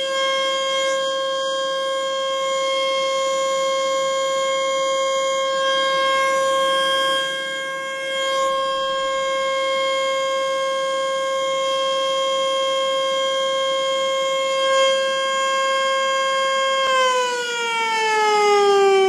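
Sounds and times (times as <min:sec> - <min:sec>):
outdoor warning siren steady tone: 0:00.0 - 0:19.0.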